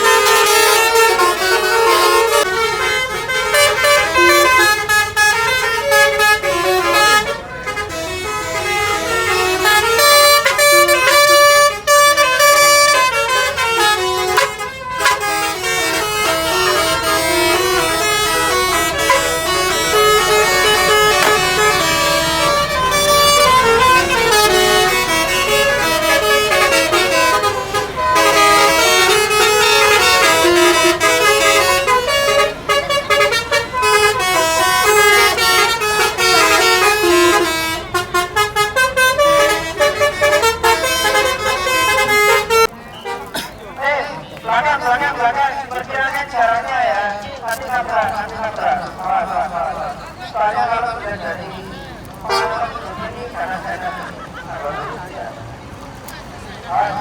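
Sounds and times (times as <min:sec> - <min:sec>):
multi-tone bus air horns playing tunes: 0:00.0 - 0:46.6, 0:47.5 - 0:55.0.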